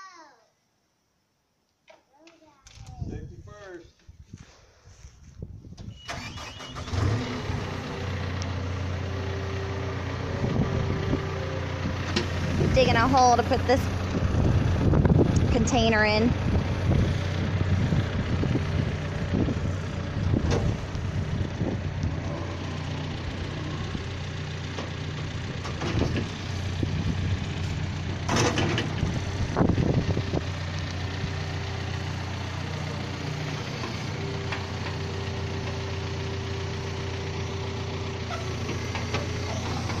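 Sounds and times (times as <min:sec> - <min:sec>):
digging machine engine: 0:05.9 - 0:40.0
metal clanks: 0:27.6 - 0:29.2.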